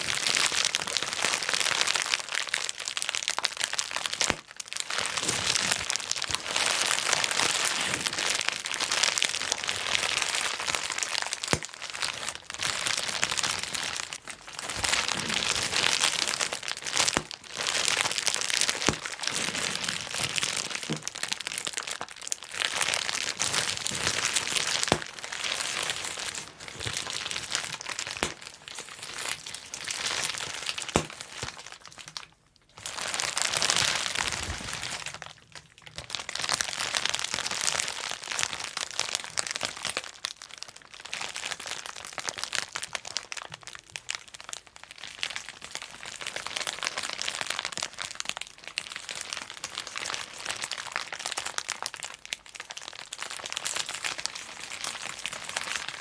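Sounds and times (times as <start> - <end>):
bubble wrap popping: 0.0 - 56.0
plastic crinkling: 0.0 - 56.0.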